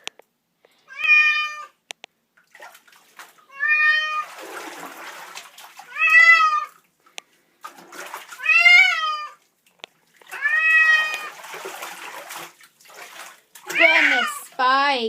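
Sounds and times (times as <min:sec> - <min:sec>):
cat yowling: 0:00.9 - 0:01.7, 0:03.5 - 0:04.3, 0:05.8 - 0:06.8, 0:08.4 - 0:09.4, 0:10.3 - 0:11.4, 0:13.6 - 0:14.5.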